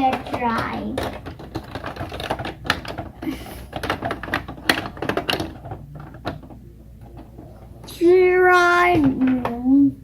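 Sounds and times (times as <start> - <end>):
plastic toy parts clattering: 0.0 - 7.7.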